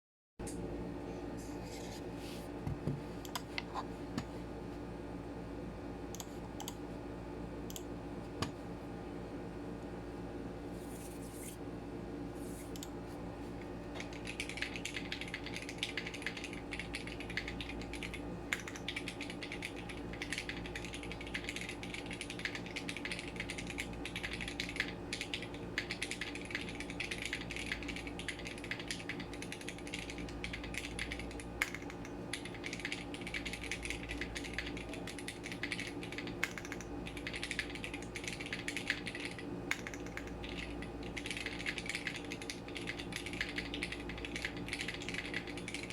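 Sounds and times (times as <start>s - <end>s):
mechanical keyboard typing: 14.0s - 45.9s.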